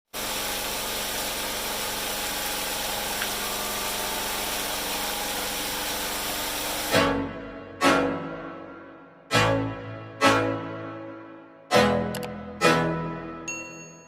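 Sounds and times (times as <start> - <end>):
boat engine running: 0.1 - 7.0.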